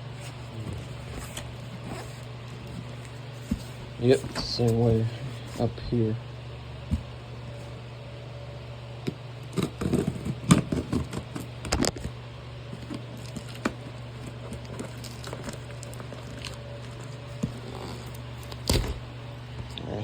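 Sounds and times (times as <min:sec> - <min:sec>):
cardboard box scraping and crackling: 0:00.1 - 0:05.7, 0:12.7 - 0:19.0.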